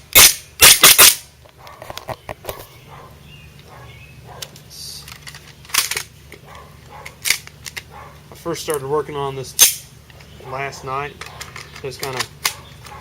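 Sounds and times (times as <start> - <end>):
airsoft pistol shots: 0.1 - 1.3
handling clicks: 11.2 - 13.0.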